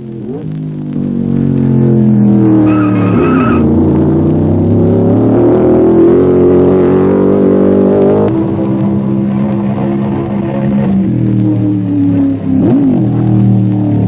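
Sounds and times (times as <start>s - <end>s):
race car engine accelerating: 0.0s - 14.0s
high tire squeal: 2.6s - 3.8s.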